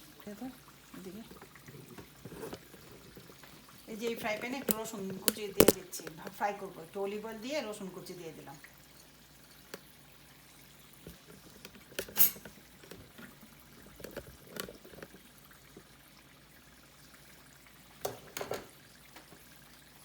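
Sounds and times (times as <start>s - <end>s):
potatoes frying in oil: 0.0s - 20.0s
utensil clinking against pan: 12.0s - 12.6s.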